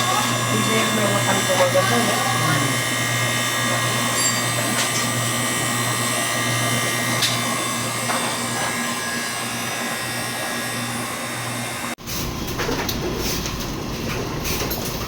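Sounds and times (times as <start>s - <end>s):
electric motor humming and whining: 0.0s - 12.0s
rougher running machine sound: 0.0s - 15.0s.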